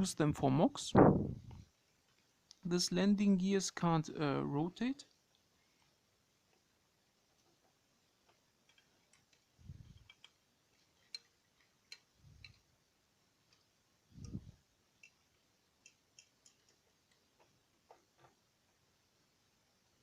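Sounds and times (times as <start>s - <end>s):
plastic parts clicking and tapping: 7.3s - 12.7s, 15.0s - 18.4s.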